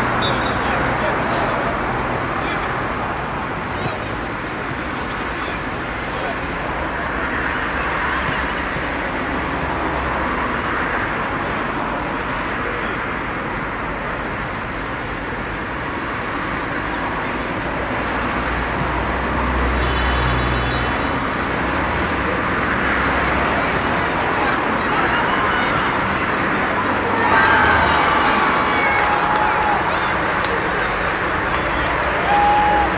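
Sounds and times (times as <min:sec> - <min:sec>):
distant voices: 0:00.0 - 0:11.1, 0:21.2 - 0:32.9
traffic-like rumble: 0:00.0 - 0:32.9.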